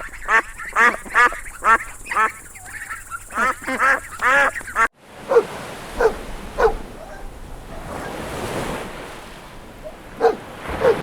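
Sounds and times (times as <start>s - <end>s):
quacking: 0.0s - 5.4s
short barks: 5.3s - 7.9s, 10.2s - 11.0s.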